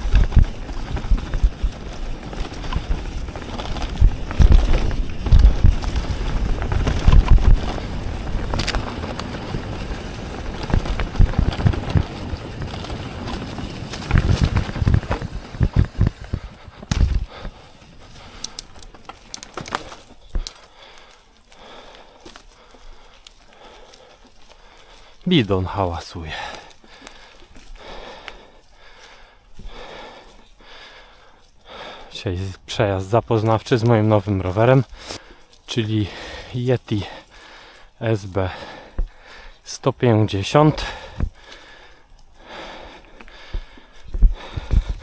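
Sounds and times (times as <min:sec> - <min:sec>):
water bottle rattling: 0:00.0 - 0:20.8
light clicks and ticks: 0:00.0 - 0:24.9
mountain bike rumbling over trail: 0:00.0 - 0:28.3.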